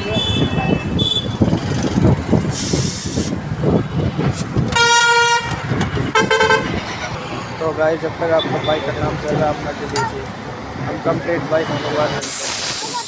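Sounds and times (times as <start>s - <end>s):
vehicle horn honking: 0.0s - 1.4s, 4.7s - 6.8s
busy street traffic: 0.0s - 13.0s.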